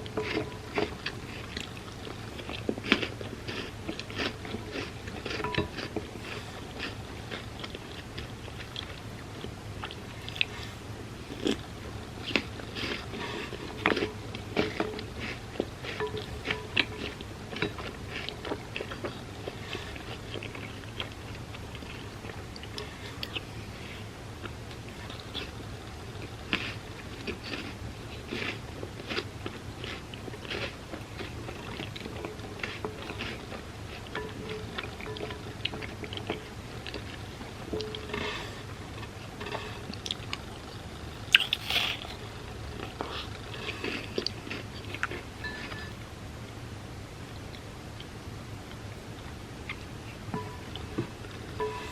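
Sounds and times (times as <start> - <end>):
chewing crunches: 0.0 - 23.5, 24.4 - 46.0
steady low hum: 0.0 - 51.9.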